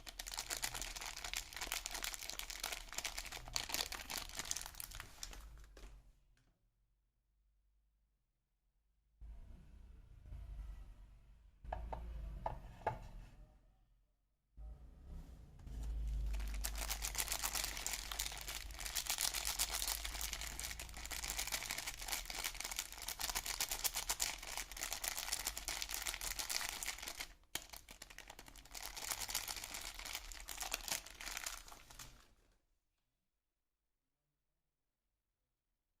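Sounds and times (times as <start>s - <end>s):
wrapper crinkling: 0.0s - 5.8s, 16.0s - 32.5s.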